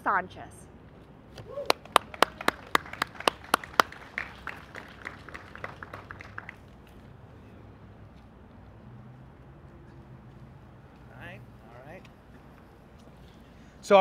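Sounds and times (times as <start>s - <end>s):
small crowd applauding: 1.3s - 7.1s
close loud hand clapping: 1.4s - 7.0s.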